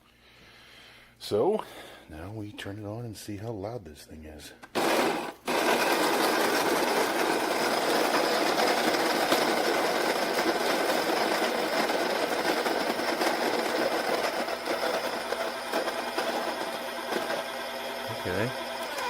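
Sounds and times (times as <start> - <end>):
coffee grinder grinding beans: 4.7 - 19.0.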